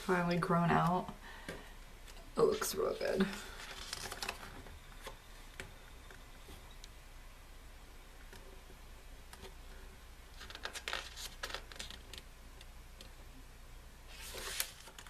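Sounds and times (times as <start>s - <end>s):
paper pages rustling: 2.4s - 5.2s, 10.4s - 12.3s, 14.1s - 15.0s
page swishing: 14.1s - 15.0s.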